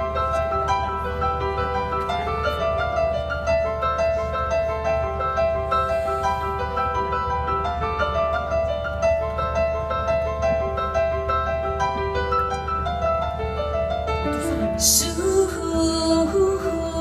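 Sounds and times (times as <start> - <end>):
piano playing: 0.0 - 17.0
woman singing: 14.4 - 17.0.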